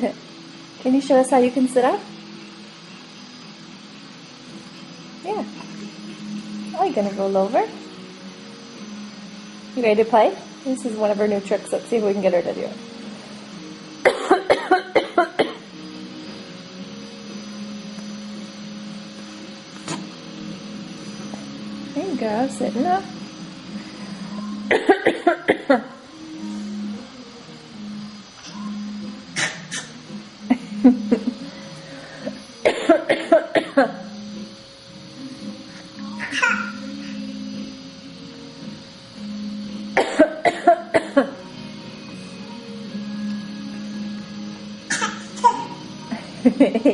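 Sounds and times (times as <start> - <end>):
baby fake coughing: 14.1 - 15.6, 24.7 - 25.7, 29.4 - 30.0, 32.7 - 33.8, 36.2 - 36.8, 40.0 - 41.3, 44.9 - 45.8.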